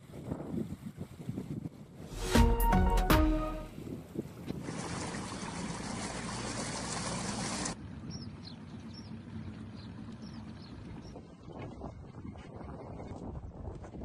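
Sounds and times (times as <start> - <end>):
floodwater rushing: 4.6 - 7.8.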